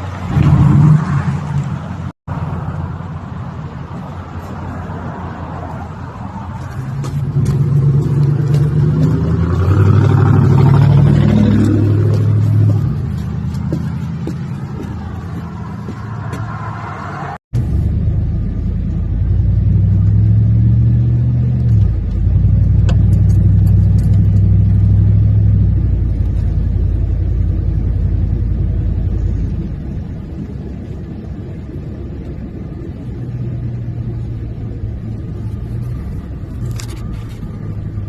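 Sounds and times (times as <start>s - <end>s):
car engine running: 6.5s - 16.5s, 17.5s - 38.0s.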